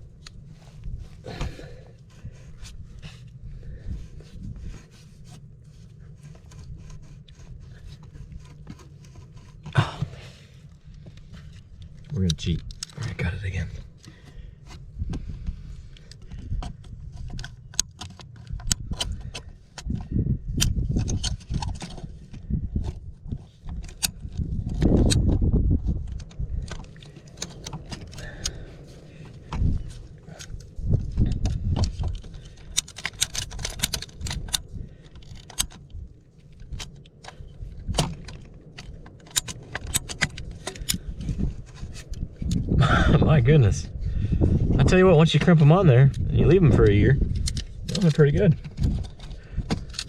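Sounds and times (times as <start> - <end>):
low rumble: 18.4 - 50.0.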